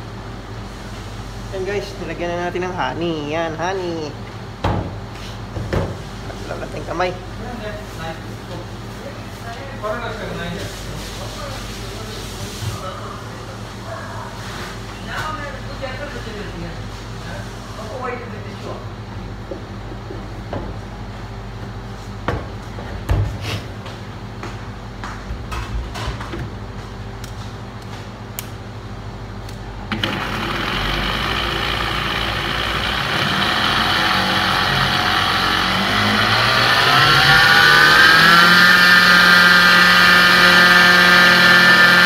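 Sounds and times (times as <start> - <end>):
electric blender motor whining: 29.9 - 42.0.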